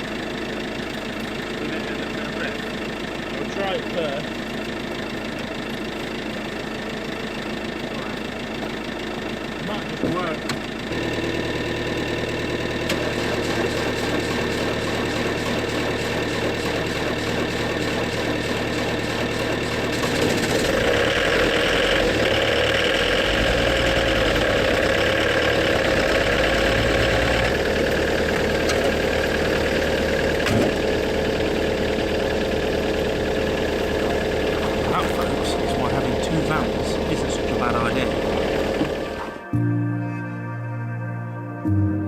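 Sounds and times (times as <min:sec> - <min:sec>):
van engine idling: 0:00.0 - 0:39.5.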